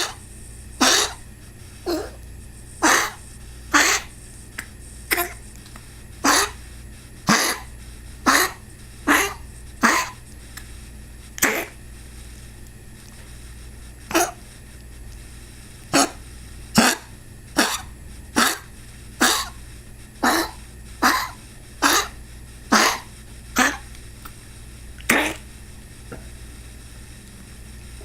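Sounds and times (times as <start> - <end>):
pet coughing: 0.0 - 0.2, 0.8 - 1.2, 1.8 - 4.1, 5.1 - 5.4, 6.2 - 6.6, 7.2 - 10.2, 11.4 - 11.8, 14.1 - 14.4, 15.9 - 19.6, 20.2 - 23.9, 25.0 - 25.4.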